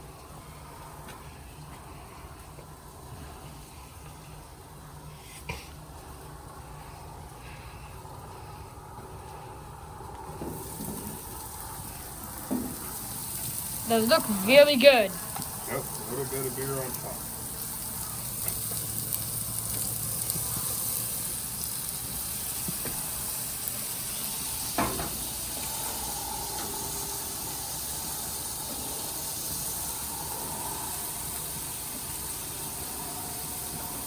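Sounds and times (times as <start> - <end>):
steaks sizzling on a grill: 10.3 - 34.0.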